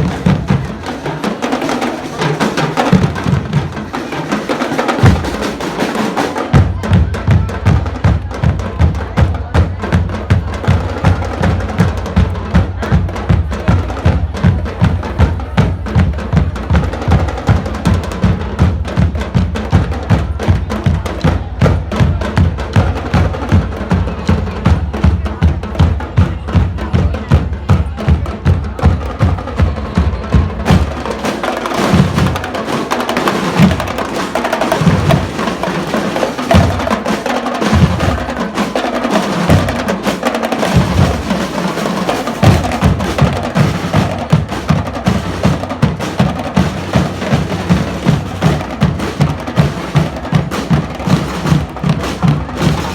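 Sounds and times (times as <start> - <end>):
drum and lyre band playing: 0.0 - 52.9
heavy drum hits: 5.0 - 5.6.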